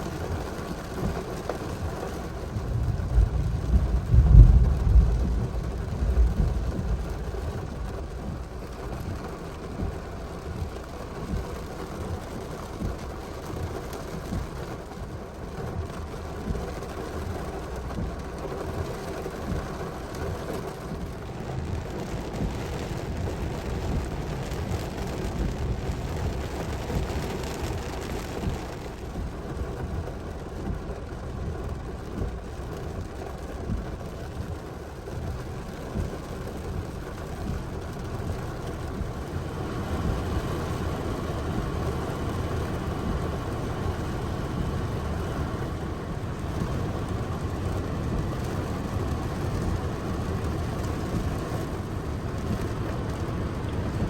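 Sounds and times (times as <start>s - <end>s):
rain-like noise: 0.0s - 54.0s
thunder rumbling: 1.0s - 11.8s.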